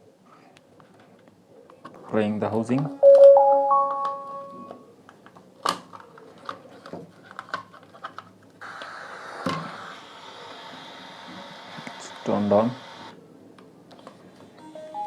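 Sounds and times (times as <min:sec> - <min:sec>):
rising three-tone power-on chime: 0:03.0 - 0:04.7
speaker hiss: 0:08.6 - 0:13.2.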